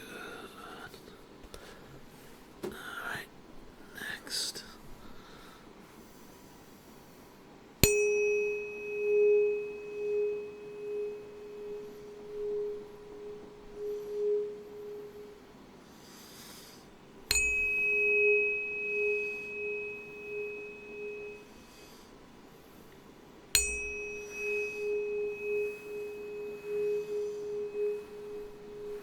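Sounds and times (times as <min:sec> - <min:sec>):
tuning fork ringing: 0:07.8 - 0:15.6, 0:17.2 - 0:22.1, 0:23.5 - 0:29.0.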